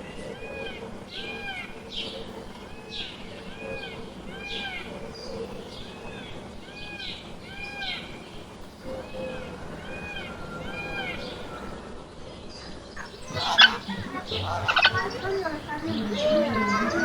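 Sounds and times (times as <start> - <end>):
bird arched call: 13.0 - 17.0.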